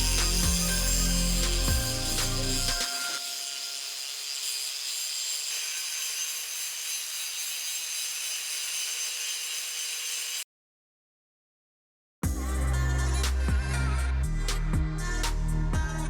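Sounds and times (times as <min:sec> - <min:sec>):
power tool working steel: 0:00.0 - 0:10.4.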